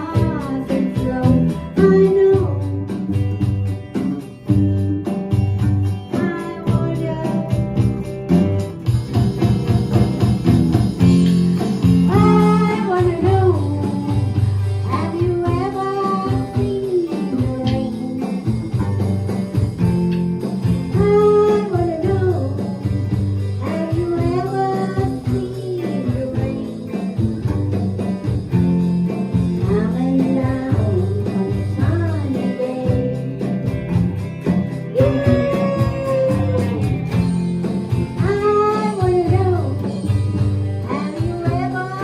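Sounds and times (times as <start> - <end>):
person singing: 0.0 - 3.4, 5.9 - 8.0, 12.1 - 19.0, 20.9 - 27.5, 29.6 - 33.7, 34.5 - 37.3, 38.0 - 42.0
steady bass line: 0.0 - 42.0
strummed guitar chords: 0.0 - 42.0.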